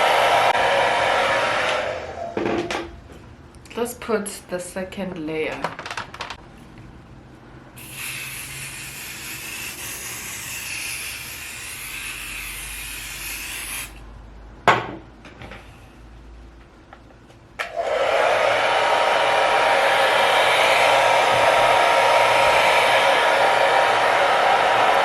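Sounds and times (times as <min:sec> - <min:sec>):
hair dryer blowing: 0:00.0 - 0:02.3, 0:17.6 - 0:25.0
aerosol spray hissing: 0:07.8 - 0:14.0.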